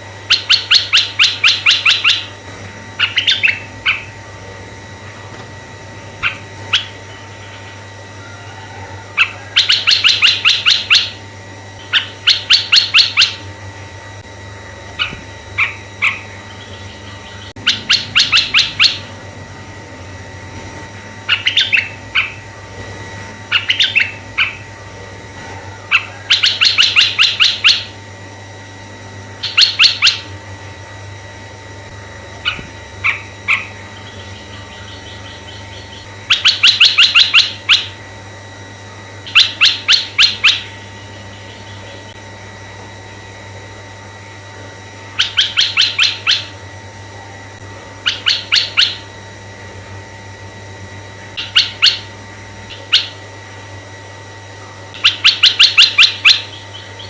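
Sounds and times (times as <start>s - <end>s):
steady low hum: 0.0s - 57.0s
bird chattering song: 0.2s - 2.4s, 3.0s - 4.2s, 6.2s - 8.5s, 9.1s - 11.2s, 11.8s - 13.5s, 15.0s - 19.2s, 21.3s - 22.5s, 23.5s - 24.9s, 25.8s - 28.0s, 29.4s - 30.3s, 32.0s - 38.0s, 39.2s - 42.2s, 45.1s - 46.6s, 48.0s - 49.1s, 51.4s - 53.3s, 54.6s - 57.0s.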